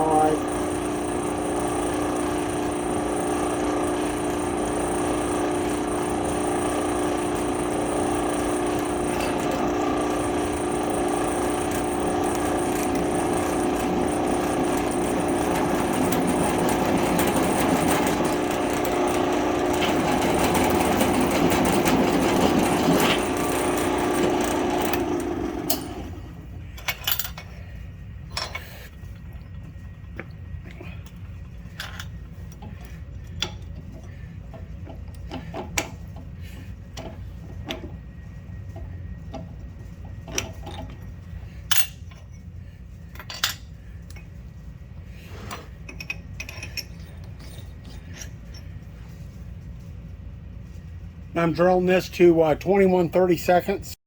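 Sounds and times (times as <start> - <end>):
drill press humming: 0.0 - 27.0.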